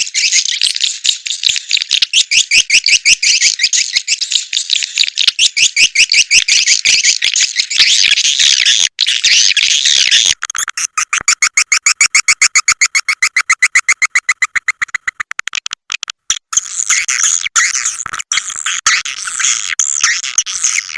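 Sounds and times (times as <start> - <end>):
fast run of short chirps: 10.0 - 15.4
swiftlet lure call chattering: 10.0 - 20.9.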